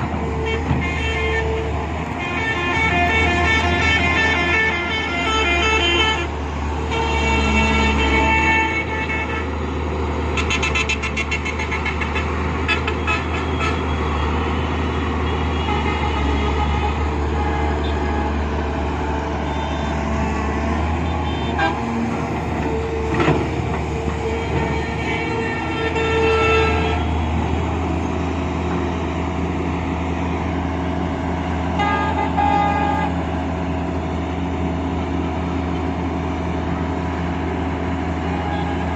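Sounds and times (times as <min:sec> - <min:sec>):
vehicle horns: 0:00.2 - 0:09.5, 0:10.3 - 0:14.3, 0:15.2 - 0:18.4, 0:19.4 - 0:20.1, 0:21.0 - 0:27.4, 0:31.7 - 0:33.3, 0:38.2 - 0:38.9.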